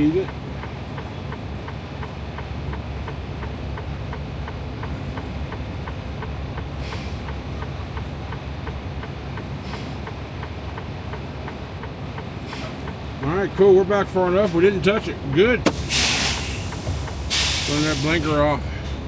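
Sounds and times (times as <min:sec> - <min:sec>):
diesel engine running low: 0:00.0 - 0:19.0
short hisses of air: 0:15.7 - 0:18.3.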